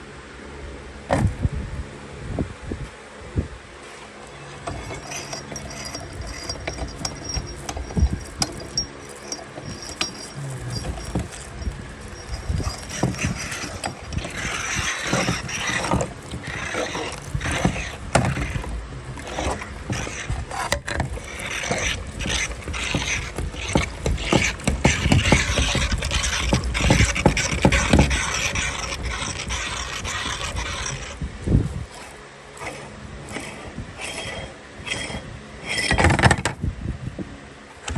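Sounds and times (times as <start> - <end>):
meat grinder clicking and knocking: 4.7 - 35.2.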